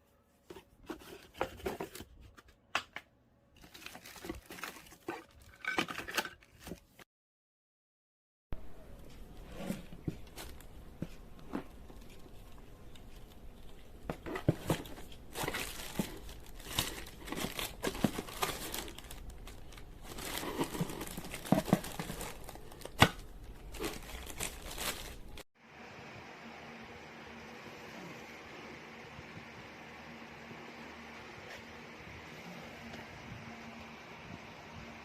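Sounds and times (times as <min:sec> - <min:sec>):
crinkling and rustling: 0:00.4 - 0:02.7, 0:03.6 - 0:07.0, 0:09.0 - 0:25.4.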